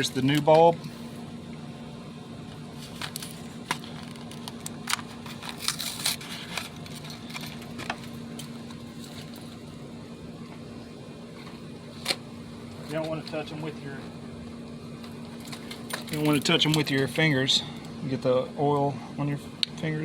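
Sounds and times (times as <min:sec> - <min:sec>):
steady low hum: 0:00.0 - 0:20.0
light clicks and crackles: 0:15.0 - 0:17.1.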